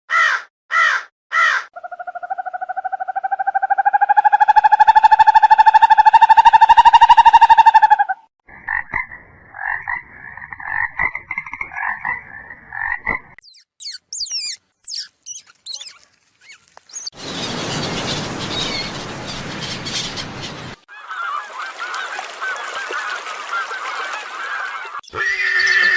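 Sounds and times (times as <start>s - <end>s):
high downward-sweeping chirps: 1.8s - 8.3s, 13.4s - 15.9s.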